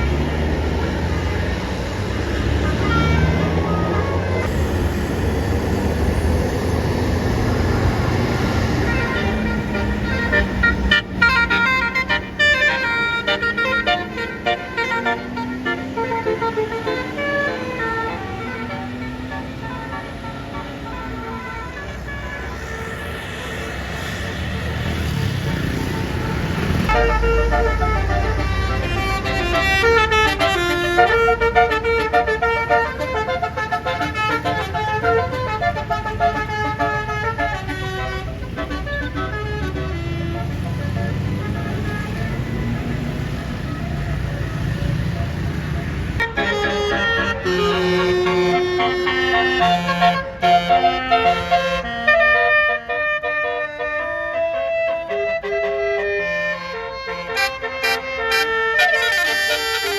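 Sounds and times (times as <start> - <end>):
bus engine rumble: 0.0 - 59.9
multi-tone bus air horn tune: 1.3 - 24.4, 25.1 - 44.0, 46.0 - 59.9.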